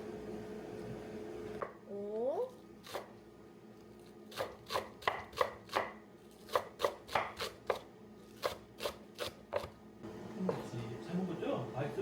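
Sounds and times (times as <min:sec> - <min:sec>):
knife chopping on cutting board: 0:02.8 - 0:03.1, 0:04.3 - 0:09.8.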